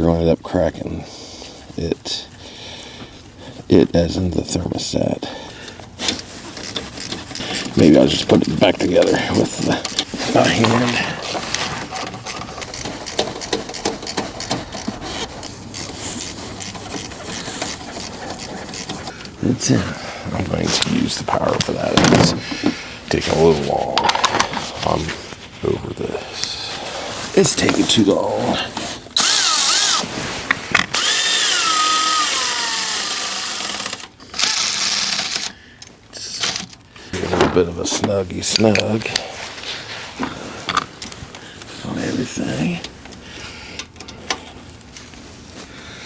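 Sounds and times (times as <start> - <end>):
tool scraping metal: 9.8 - 19.1
power drill whining: 29.2 - 30.1, 30.9 - 35.5.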